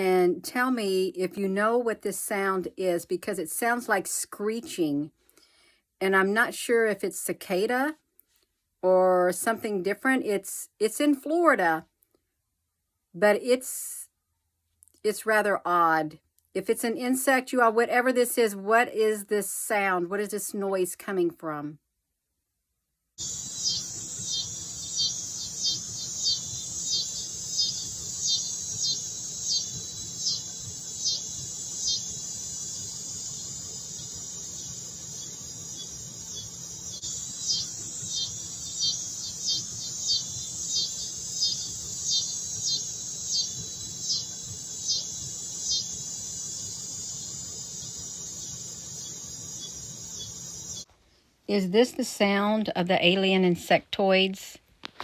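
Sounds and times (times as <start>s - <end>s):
insect screeching buzz: 23.2s - 50.9s.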